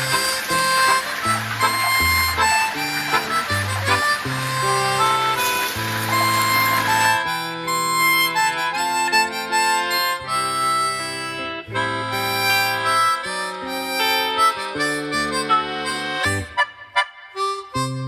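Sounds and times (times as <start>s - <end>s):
instrumental background music: 0.0s - 18.0s.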